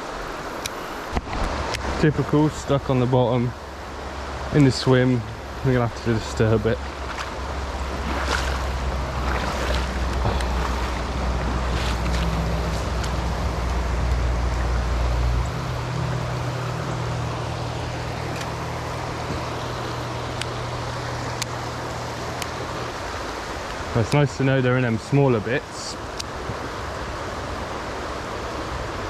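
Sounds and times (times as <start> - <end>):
river water rushing over rocks: 0.0 - 29.0
low rumble: 6.8 - 21.0.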